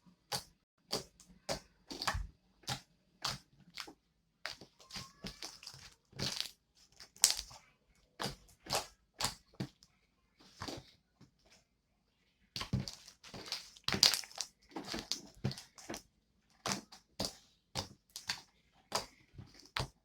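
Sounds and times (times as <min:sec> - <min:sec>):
slime squishing and popping: 0:00.3 - 0:07.6, 0:08.2 - 0:09.6, 0:12.6 - 0:16.0.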